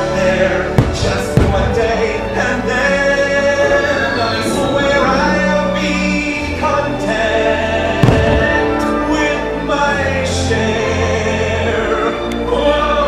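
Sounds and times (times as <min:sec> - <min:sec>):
orchestral music with choir: 0:00.0 - 0:13.0
fireworks bursting: 0:00.6 - 0:02.3, 0:08.0 - 0:09.2.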